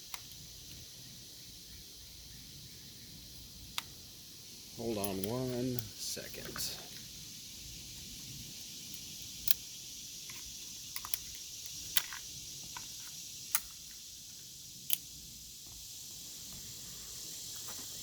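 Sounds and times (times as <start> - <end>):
insects hissing: 0.0 - 18.0
pistol clicks: 9.4 - 9.6.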